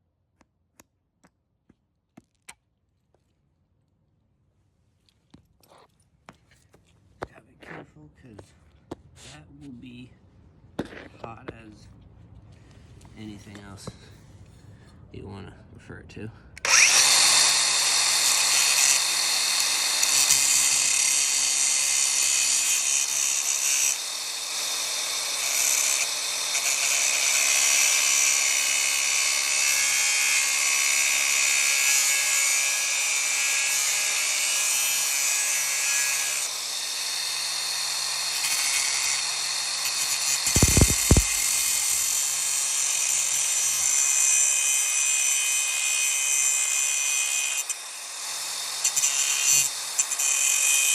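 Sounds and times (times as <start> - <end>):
angle grinder cutting metal: 16.6 - 50.9.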